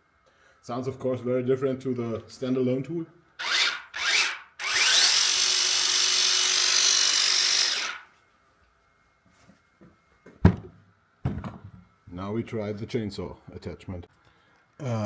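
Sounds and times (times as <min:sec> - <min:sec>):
hedge trimmer running: 0:03.4 - 0:08.1.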